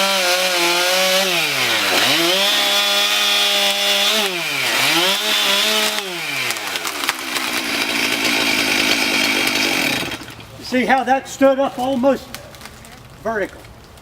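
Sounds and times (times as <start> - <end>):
chainsaw cutting wood: 0.0 - 10.4.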